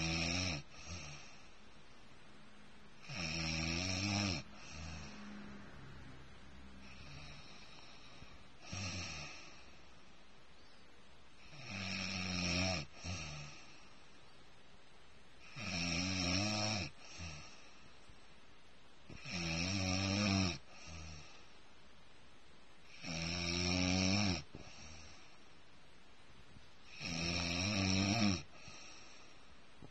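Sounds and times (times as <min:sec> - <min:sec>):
person snoring: 0:00.0 - 0:01.5, 0:03.0 - 0:05.6, 0:06.8 - 0:09.8, 0:26.9 - 0:29.3
soft breath: 0:04.4 - 0:11.5, 0:28.5 - 0:29.9.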